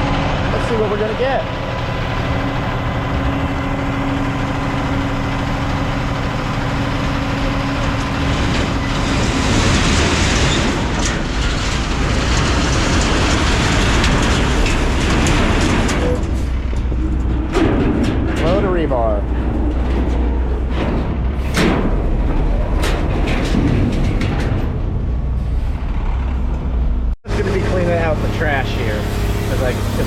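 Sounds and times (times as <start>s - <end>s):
heavy equipment engine running: 0.0s - 30.0s
rushing clattering noise: 0.0s - 30.0s.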